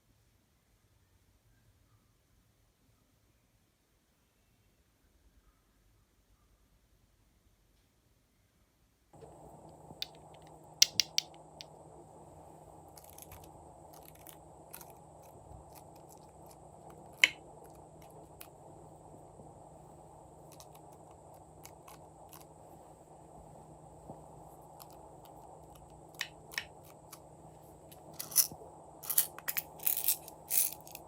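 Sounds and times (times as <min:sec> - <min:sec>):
steady background hiss: 0:07.4 - 0:31.0.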